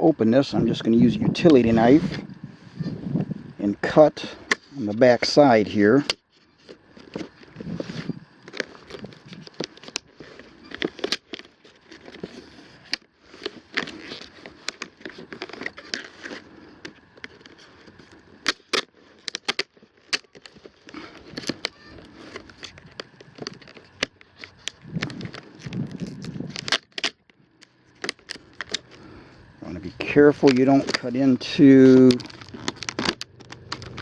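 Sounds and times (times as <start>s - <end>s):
wrapping crackling: 3.8s - 34.0s
utility knife cutting packaging: 8.5s - 27.2s, 30.2s - 34.0s.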